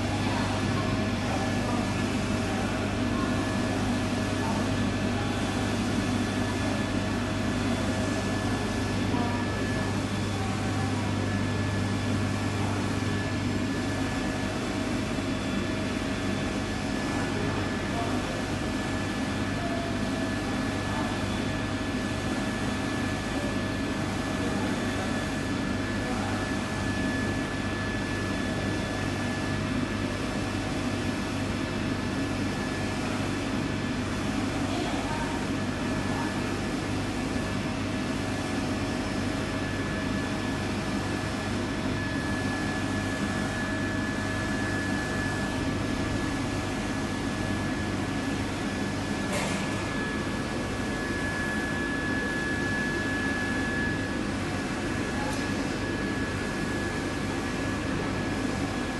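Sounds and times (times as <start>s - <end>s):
machinery humming and whining: 0.0s - 58.9s.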